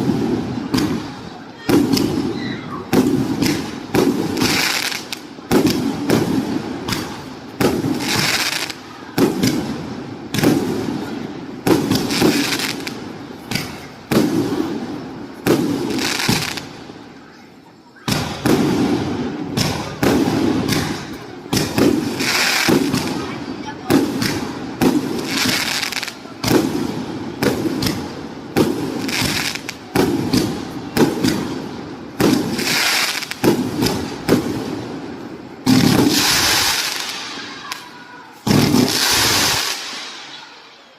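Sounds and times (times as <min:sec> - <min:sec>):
firework launch bangs: 0:00.0 - 0:17.0, 0:18.0 - 0:40.6
firework booms: 0:00.0 - 0:17.4, 0:18.0 - 0:40.7
firework crackling: 0:00.0 - 0:40.9.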